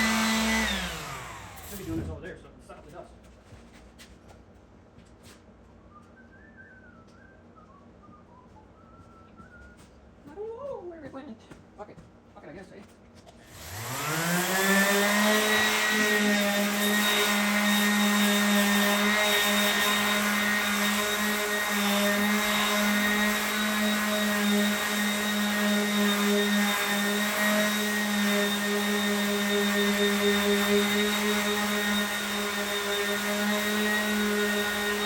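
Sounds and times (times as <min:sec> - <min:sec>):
power sander motor whining: 0:00.0 - 0:02.0, 0:13.5 - 0:35.0.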